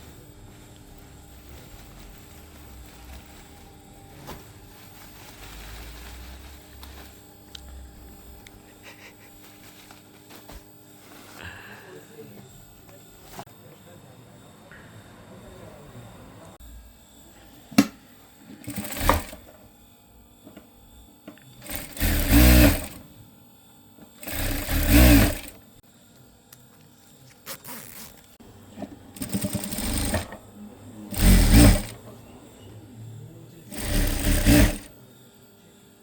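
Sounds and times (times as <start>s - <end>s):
sewing machine stitching: 18.6s - 19.5s, 21.6s - 23.0s, 24.2s - 25.6s, 29.1s - 30.4s, 31.1s - 32.0s, 33.7s - 34.9s.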